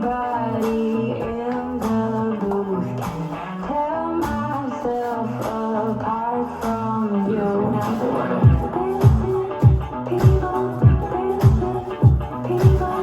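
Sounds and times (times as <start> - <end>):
guitar: 0.0 - 13.0
steady beat: 0.0 - 13.0
sustained pitched notes: 7.1 - 13.0.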